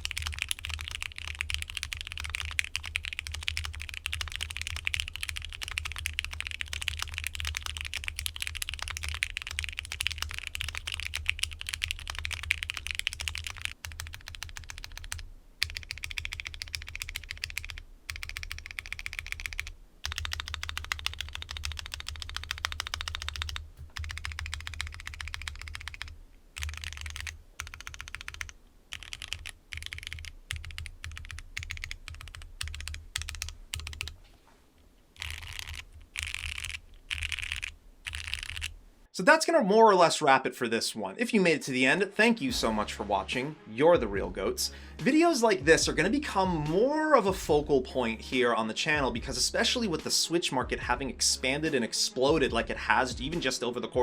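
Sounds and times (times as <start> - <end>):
fast typing on mechanical keyboard: 0.0 - 34.2, 35.2 - 38.8
low steady hum: 3.8 - 39.2.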